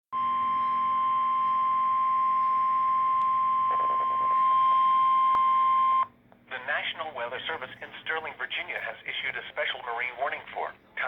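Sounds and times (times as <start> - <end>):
steady alarm beep: 0.1 - 6.0.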